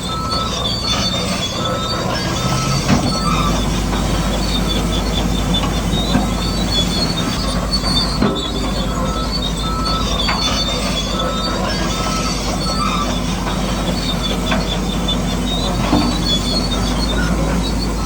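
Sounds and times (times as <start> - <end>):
bulldozer engine running: 0.0 - 18.0
high squeaks: 0.0 - 18.0
steel tracks squealing and clanking: 0.0 - 18.0.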